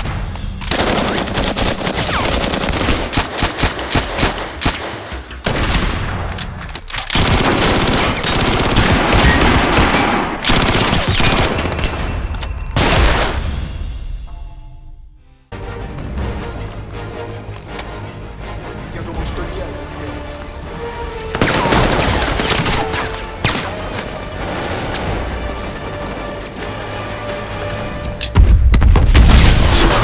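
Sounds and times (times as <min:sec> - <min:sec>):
rapid gunfire: 0:00.0 - 0:13.4, 0:21.4 - 0:24.0.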